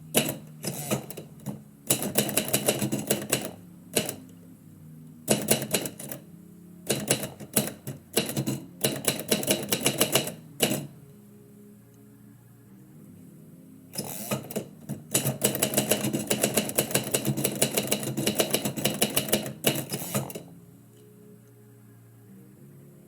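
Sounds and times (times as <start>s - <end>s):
typewriter key strikes: 0.1s - 4.3s, 5.3s - 6.2s, 6.9s - 11.0s, 14.0s - 20.5s.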